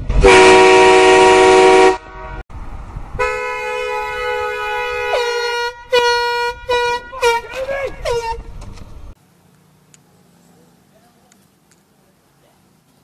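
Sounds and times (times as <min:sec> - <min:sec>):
air horn blasts: 0:00.1 - 0:02.4, 0:03.2 - 0:08.5.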